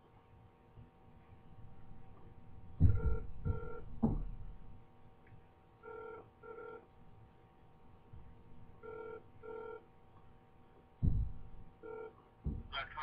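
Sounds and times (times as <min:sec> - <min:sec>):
low thump: 0:02.8 - 0:04.5, 0:11.0 - 0:11.6, 0:12.4 - 0:12.8
telephone ringback: 0:02.9 - 0:03.9, 0:05.8 - 0:06.8, 0:08.8 - 0:09.9, 0:11.8 - 0:12.2.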